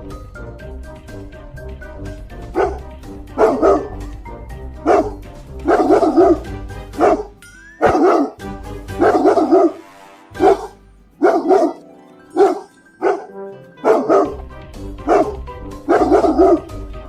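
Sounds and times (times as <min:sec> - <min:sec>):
background music with plucked notes: 0:00.0 - 0:17.0
dog barking: 0:02.5 - 0:02.8, 0:03.4 - 0:04.0, 0:04.8 - 0:08.4, 0:09.0 - 0:09.8, 0:10.4 - 0:11.8, 0:12.4 - 0:14.4, 0:15.0 - 0:16.7.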